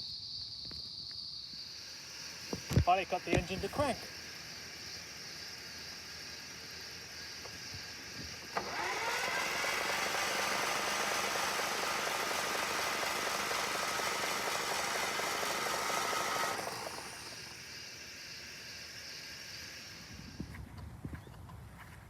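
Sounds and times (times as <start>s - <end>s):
starter motor whine: 7.4s - 17.7s.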